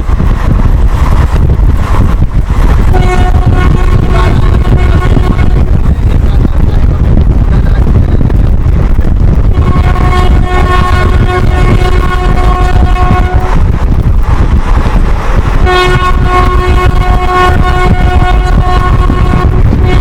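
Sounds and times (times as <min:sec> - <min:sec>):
train rumbling at speed: 0:00.0 - 0:20.0
train horn blasts: 0:02.5 - 0:05.8, 0:09.5 - 0:20.0.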